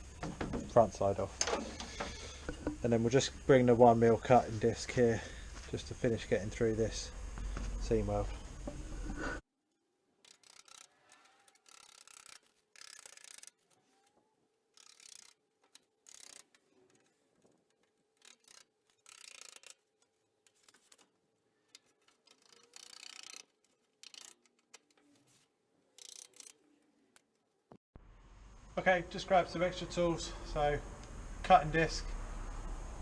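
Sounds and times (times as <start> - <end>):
angle grinder cutting steel: 10.2 - 14.2, 14.8 - 21.1, 26.0 - 27.4.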